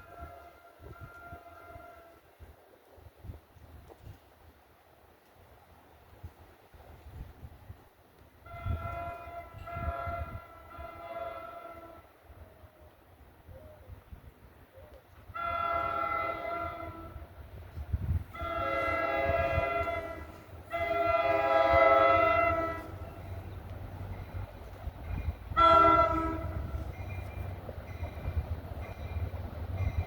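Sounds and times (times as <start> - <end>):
train horn blasts: 0.0 - 2.4, 8.4 - 12.4, 15.3 - 30.0
train rumbling: 0.0 - 13.4, 14.0 - 30.0.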